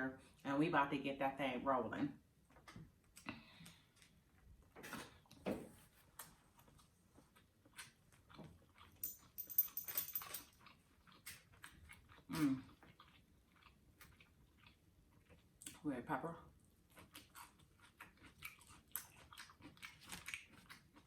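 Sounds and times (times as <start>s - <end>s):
chewing and mouth noises: 6.0s - 9.3s, 10.2s - 15.8s, 16.5s - 21.0s.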